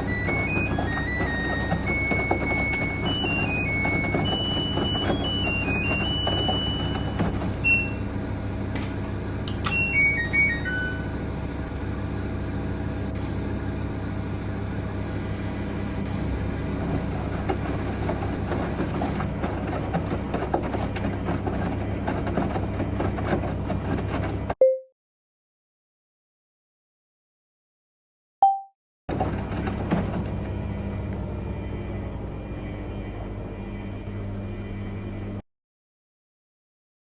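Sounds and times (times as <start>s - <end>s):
electronic beeps: 0.0s - 8.1s, 9.6s - 11.2s, 24.6s - 24.9s
appliance humming: 0.0s - 24.6s, 29.1s - 35.4s.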